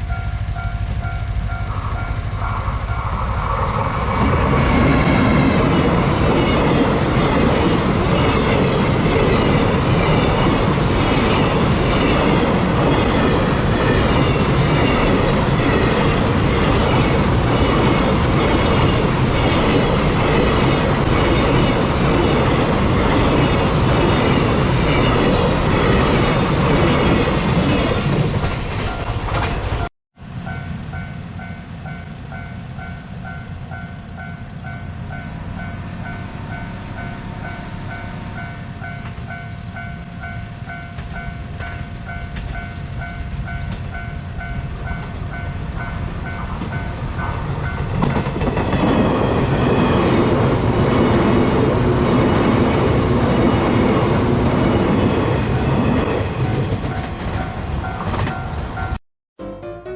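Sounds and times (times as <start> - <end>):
train wheels clattering over rail joints: 46.4 - 50.3.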